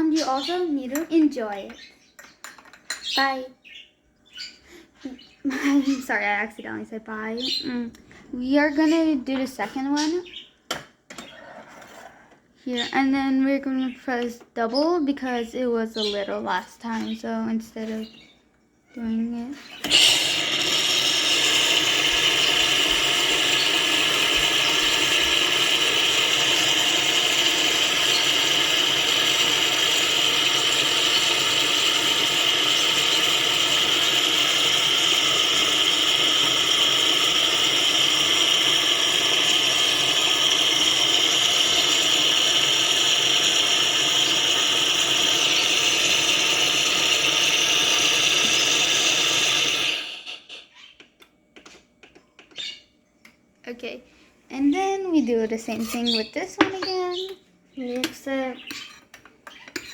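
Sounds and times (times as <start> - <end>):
coffee machine frothing milk: 19.6 - 50.7, 58.0 - 59.9.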